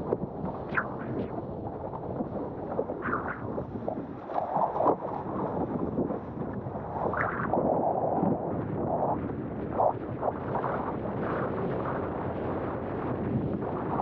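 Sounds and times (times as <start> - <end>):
wind buffeting microphone: 0.0 - 14.0
water rushing and slapping: 2.3 - 7.7.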